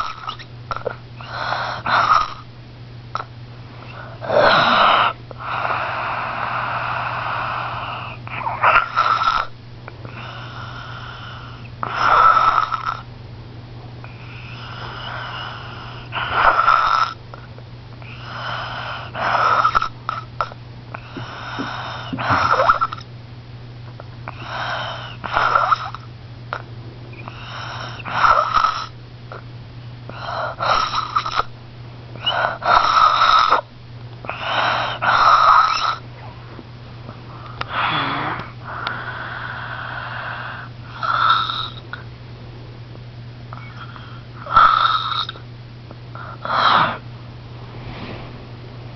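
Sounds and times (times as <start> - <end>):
rasping snoring: 0.0 - 2.5, 4.1 - 9.5, 10.1 - 13.0, 14.1 - 17.2, 18.0 - 23.0, 24.3 - 26.1, 27.2 - 28.9, 32.2 - 33.6, 34.3 - 36.0, 37.6 - 41.9, 43.6 - 45.4
steady low hum: 0.0 - 48.9.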